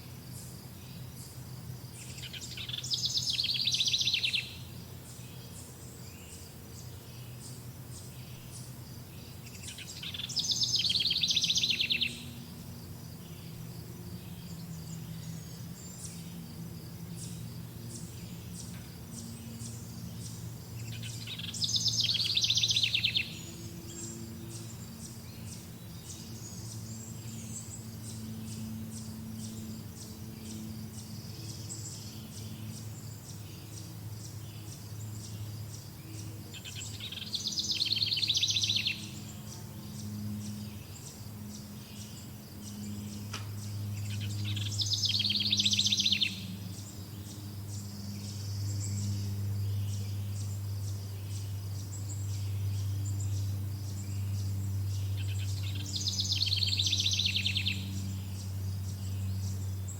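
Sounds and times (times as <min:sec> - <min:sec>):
low steady hum: 0:00.0 - 0:59.9
songbird trilled phrases: 0:00.4 - 0:59.9.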